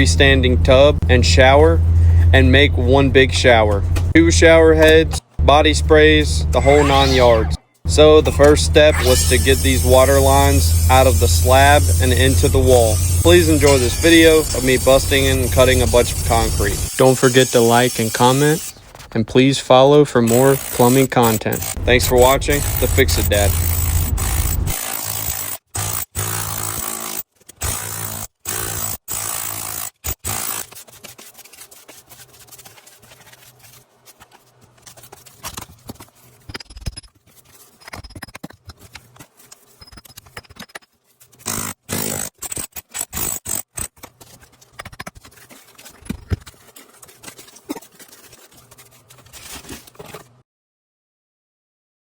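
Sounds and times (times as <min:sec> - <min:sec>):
power tools cutting concrete: 0:08.4 - 0:18.8, 0:20.3 - 0:27.2.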